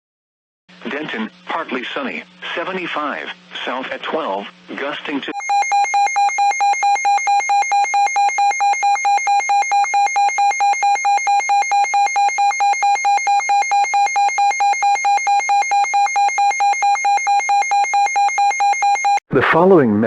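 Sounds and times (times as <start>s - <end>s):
pulsing high alert beep: 5.4s - 19.2s.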